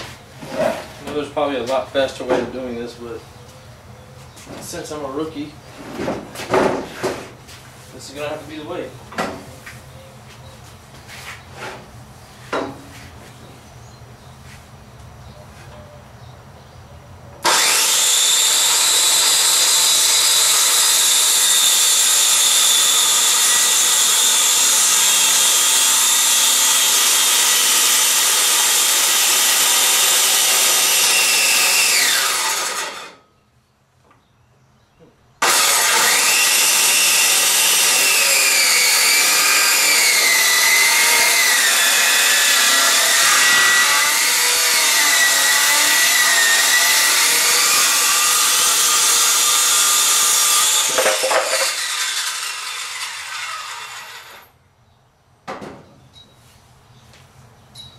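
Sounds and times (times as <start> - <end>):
electric saw cutting wood: 17.4 - 33.3, 35.4 - 54.6.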